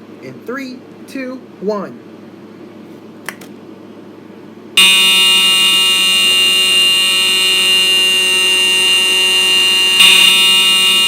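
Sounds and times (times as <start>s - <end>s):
fire alarm sounding: 4.8s - 11.0s.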